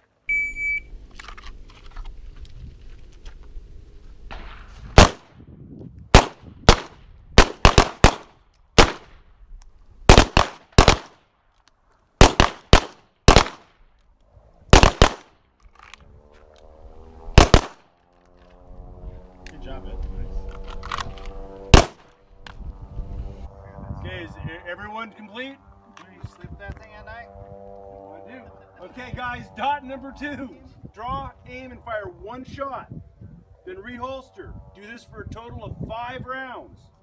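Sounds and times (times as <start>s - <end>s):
pistol shots: 4.3s - 5.3s, 6.1s - 9.2s, 10.1s - 11.2s, 12.2s - 13.7s, 14.7s - 15.3s, 17.4s - 17.8s, 21.7s - 22.1s.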